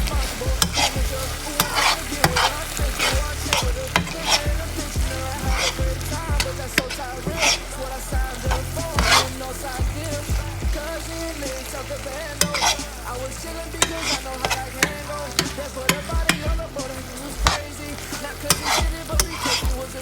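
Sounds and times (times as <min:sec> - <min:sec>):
background music with a beat: 0:00.0 - 0:20.0
chicken sizzling in a frying pan: 0:00.1 - 0:04.4.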